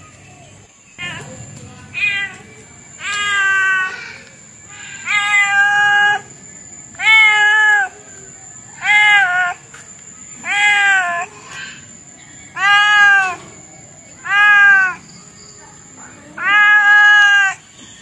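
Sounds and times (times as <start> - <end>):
faint high whine: 0.0 - 16.3
cat meowing: 1.9 - 2.4, 3.0 - 4.0, 5.0 - 6.2, 7.0 - 7.9, 8.8 - 9.6, 10.4 - 11.3, 12.6 - 13.4, 14.2 - 15.0, 16.4 - 17.6.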